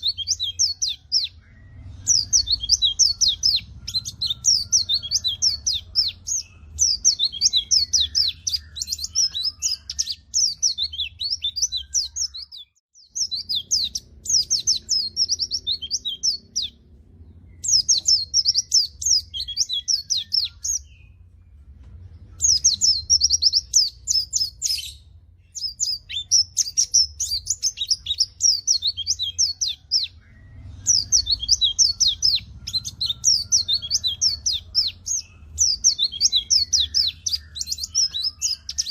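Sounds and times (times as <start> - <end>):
bird twittering chirps: 0.0 - 38.9
faint low hum: 13.0 - 38.9.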